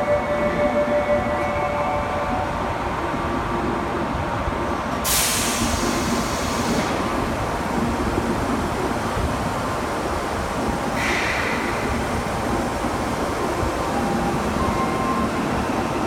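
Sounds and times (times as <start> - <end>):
subway train rumble: 0.0 - 16.0
compressed air hiss: 5.1 - 7.0, 11.0 - 11.8.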